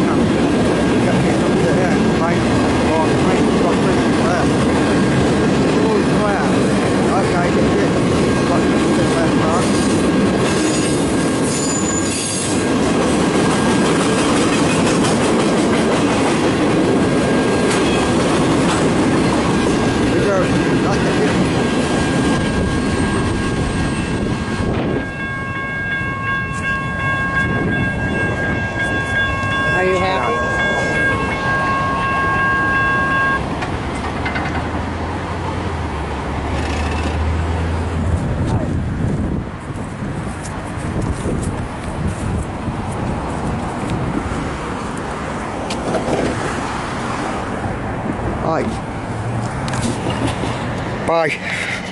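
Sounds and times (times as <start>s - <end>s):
freight train rumbling on rails: 0.0s - 51.9s
high-pitched wheel squeal: 10.6s - 12.6s.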